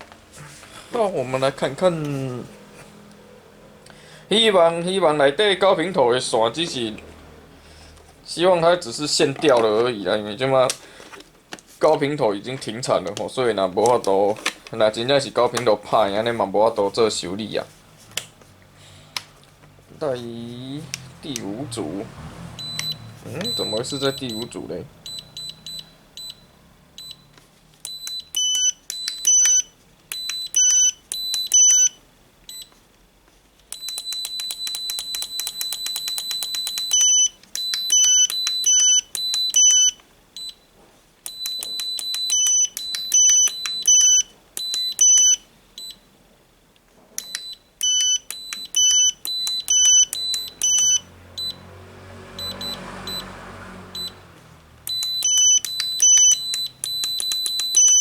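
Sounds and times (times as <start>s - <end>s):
soft low whirr: 0.0s - 58.0s
short electronic beeps: 22.6s - 27.3s, 33.8s - 40.6s, 47.2s - 51.6s, 52.4s - 53.3s, 54.0s - 54.2s, 54.9s - 58.0s.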